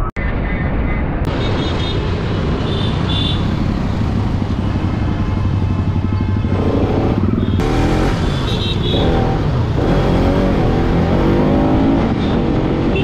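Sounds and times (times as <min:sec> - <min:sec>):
traffic noise: 0:00.0 - 0:13.0
motorcycle engine: 0:01.6 - 0:13.0.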